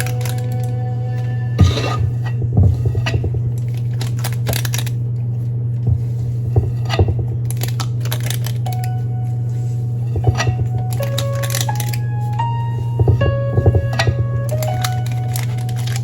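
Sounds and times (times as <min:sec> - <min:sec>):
steady low hum: 0:00.0 - 0:16.0
dishes and utensils clinking: 0:06.5 - 0:12.4.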